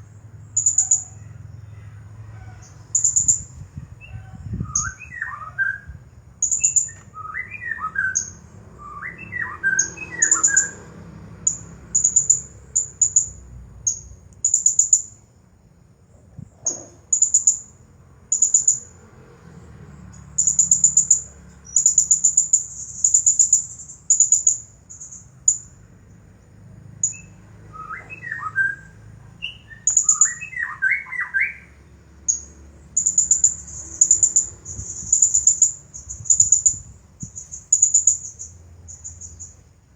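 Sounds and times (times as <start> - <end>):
parrot high trilled chirps: 4.7 - 10.8.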